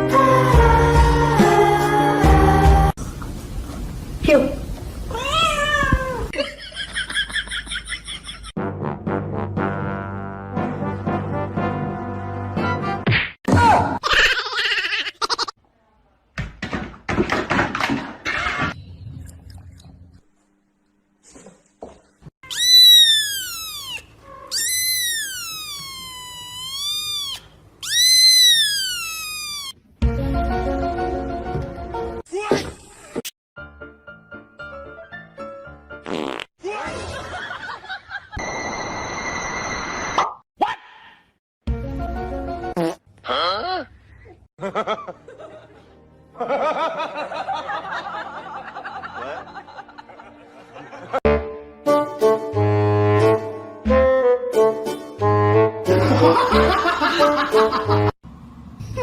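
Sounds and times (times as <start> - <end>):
background music: 0.0 - 3.0, 8.6 - 13.1, 30.0 - 32.2, 41.7 - 42.8, 44.6 - 58.1
laughter-like calls: 14.0 - 15.6
cat yowling: 22.5 - 29.7.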